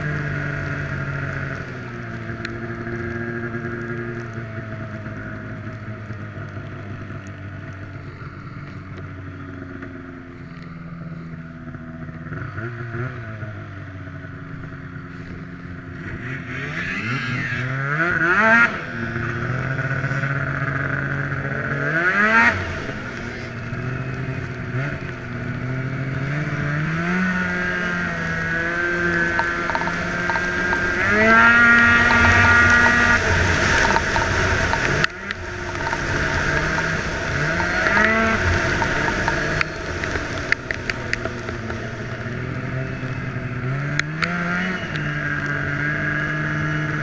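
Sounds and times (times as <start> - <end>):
snowmobile engines revving: 14.3 - 47.0.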